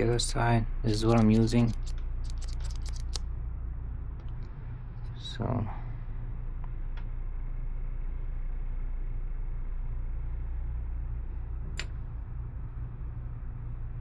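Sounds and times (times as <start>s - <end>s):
low background hum: 0.0s - 14.0s
sharp click: 0.9s - 3.2s.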